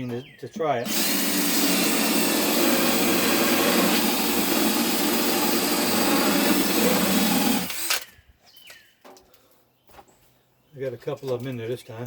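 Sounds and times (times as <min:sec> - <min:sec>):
electric drill cutting a hole: 0:00.8 - 0:08.1.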